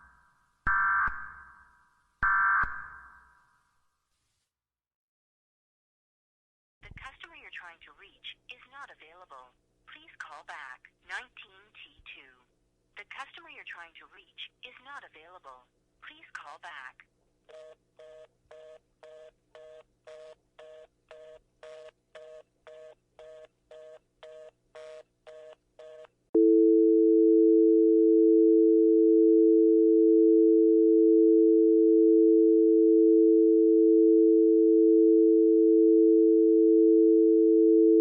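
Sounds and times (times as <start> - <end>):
telephone dial tone: 26.4 - 33.3.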